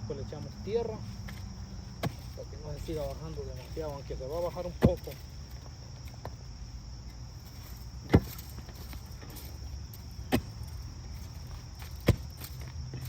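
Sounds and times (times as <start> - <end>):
high insect drone: 0.0 - 13.0
digging tool striking tree stump: 1.2 - 3.2, 3.8 - 5.2, 8.0 - 9.6, 10.2 - 10.8, 11.7 - 13.0.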